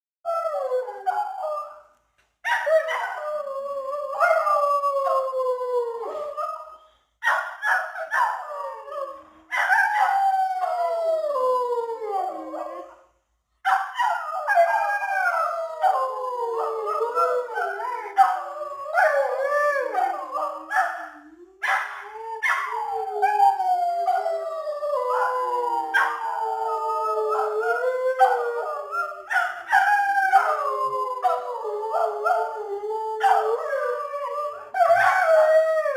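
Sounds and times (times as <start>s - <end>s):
husky howling: 0.3s - 1.8s, 8.0s - 12.9s, 14.0s - 35.9s.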